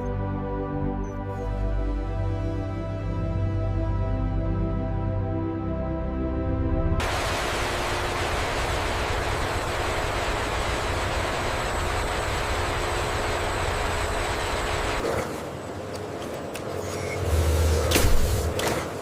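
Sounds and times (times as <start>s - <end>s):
machinery rushing noise: 7.0s - 15.0s.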